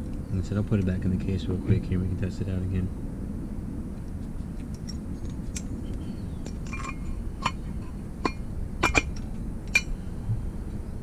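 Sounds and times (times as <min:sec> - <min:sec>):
steady low rumble: 0:00.0 - 0:11.0
metal clinks and taps: 0:06.4 - 0:10.0
metal parts rattling: 0:06.4 - 0:10.0.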